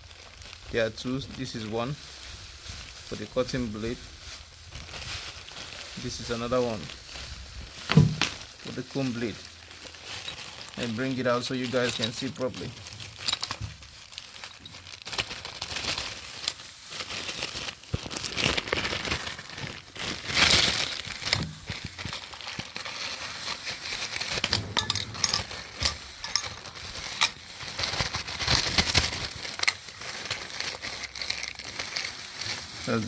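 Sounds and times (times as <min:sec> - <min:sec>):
packaging crinkling: 0:00.0 - 0:33.0
small clinks and knocks: 0:13.0 - 0:13.8, 0:24.4 - 0:27.4.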